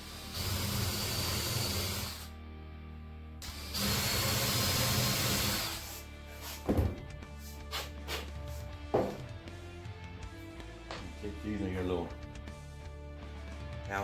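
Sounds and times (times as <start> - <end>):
electric drill boring wood: 0.0 - 2.3, 3.4 - 6.0.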